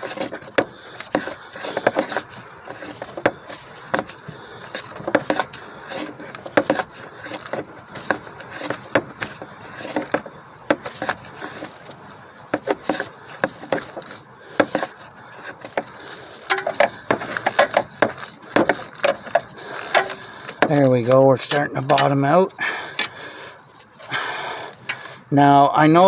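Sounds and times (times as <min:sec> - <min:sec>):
hand tools clicking on bolts: 0:12.6 - 0:22.2.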